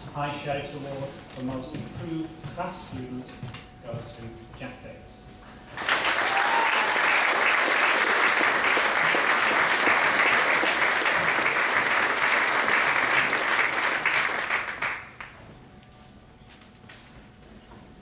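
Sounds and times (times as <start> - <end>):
audience clapping: 5.7 - 15.4.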